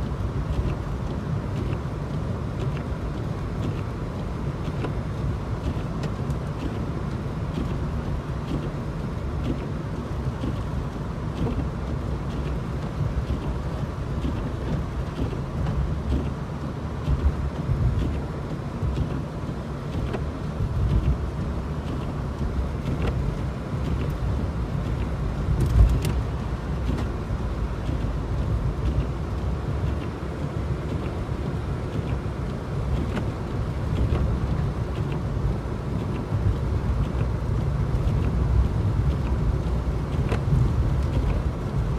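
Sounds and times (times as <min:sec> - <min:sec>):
car driving through snow: 0:00.0 - 0:41.9.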